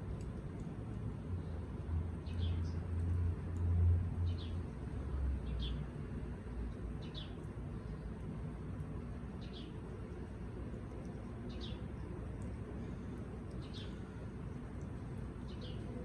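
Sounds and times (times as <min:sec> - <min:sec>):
bird chirping: 0:02.2 - 0:03.1, 0:04.2 - 0:04.7, 0:05.4 - 0:05.9, 0:06.9 - 0:08.0, 0:09.3 - 0:09.8, 0:11.0 - 0:12.2, 0:13.5 - 0:14.2, 0:15.4 - 0:16.0.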